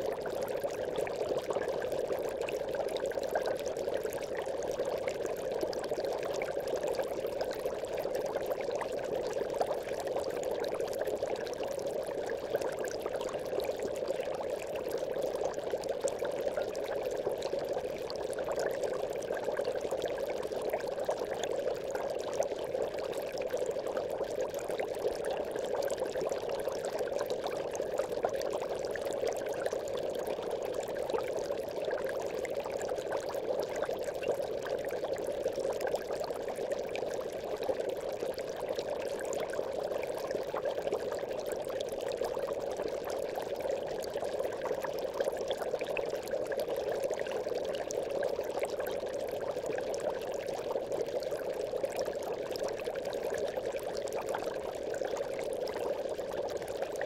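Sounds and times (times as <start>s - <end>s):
aquarium bubbling: 0.0s - 57.0s.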